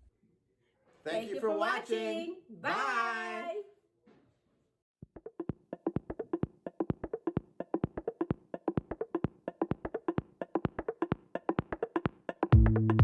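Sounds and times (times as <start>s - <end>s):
music of dry pitched knocks: 5.0s - 13.0s.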